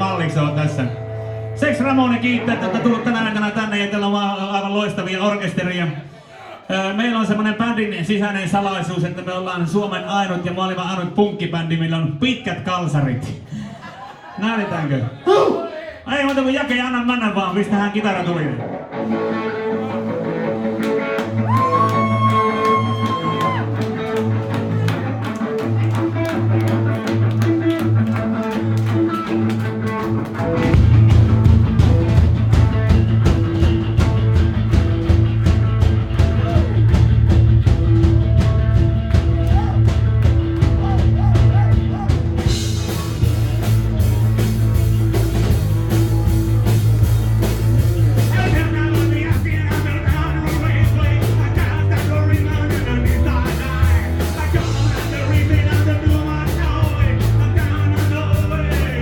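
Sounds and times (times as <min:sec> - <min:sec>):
electric guitar: 0:00.0 - 0:04.6, 0:17.5 - 0:59.0
bass guitar: 0:00.0 - 0:06.0, 0:16.2 - 0:59.0
drums: 0:16.3 - 0:59.0.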